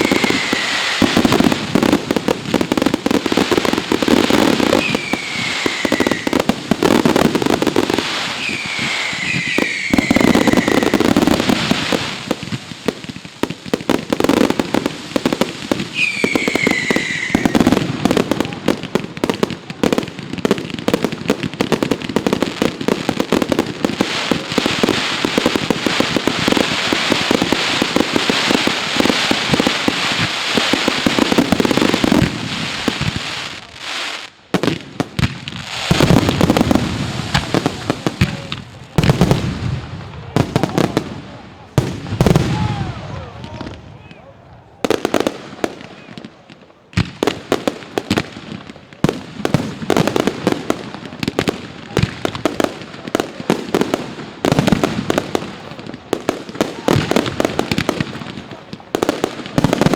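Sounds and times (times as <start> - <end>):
firework whistles falling in pitch: 0.0 - 1.1, 4.6 - 6.4, 8.2 - 11.2, 15.9 - 17.8
fireworks bangs and crackling: 0.0 - 59.9.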